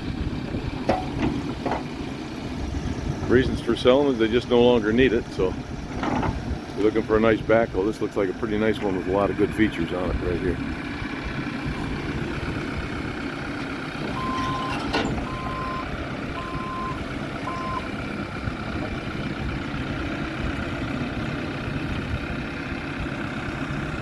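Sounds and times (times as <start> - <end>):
diesel engine running: 0.0 - 24.0
backup alarm beeping: 14.1 - 17.9.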